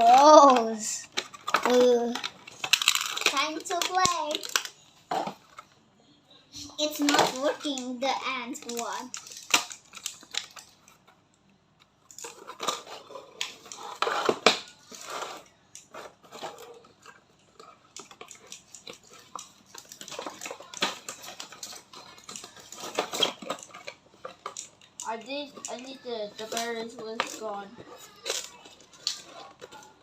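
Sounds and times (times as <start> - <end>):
hard plastic clicking and rattling: 15.8 - 30.0.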